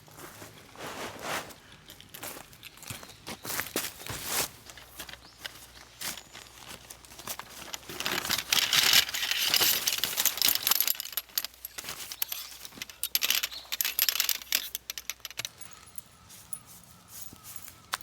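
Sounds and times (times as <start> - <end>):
small metal items jingling: 4.7 - 18.0.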